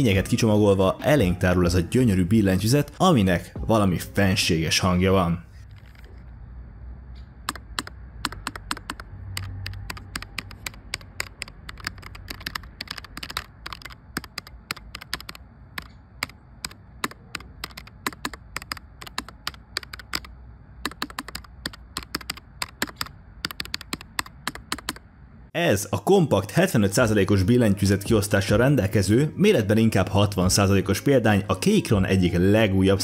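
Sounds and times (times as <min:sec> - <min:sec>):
mechanical keyboard typing: 0:07.4 - 0:25.0.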